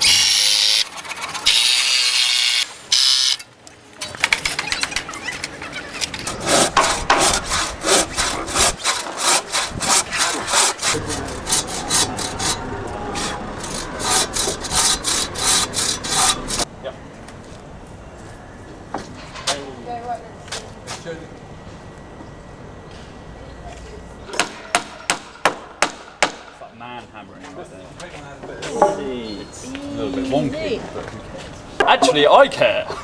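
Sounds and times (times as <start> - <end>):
hand saw cutting timber: 6.2 - 16.7.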